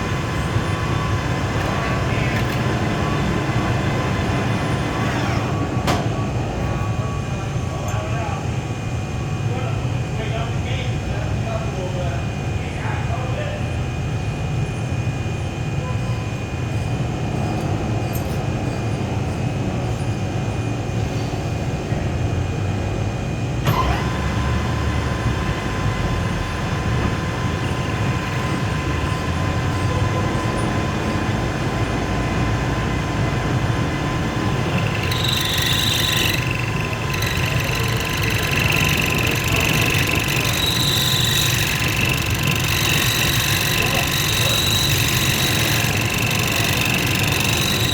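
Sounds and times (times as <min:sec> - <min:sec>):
lathe humming: 0:00.0 - 0:07.7, 0:24.0 - 0:47.9
steady whine: 0:25.4 - 0:47.9.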